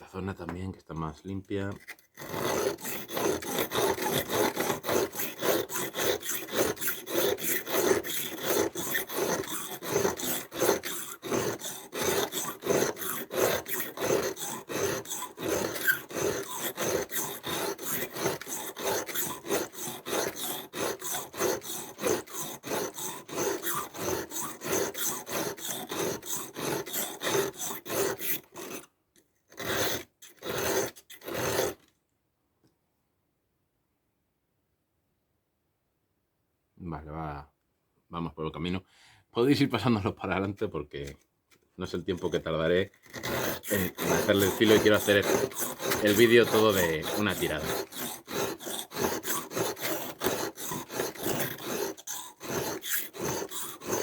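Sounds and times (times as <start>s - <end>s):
knife blade rasping on sharpening stone: 43.2s - 54.0s.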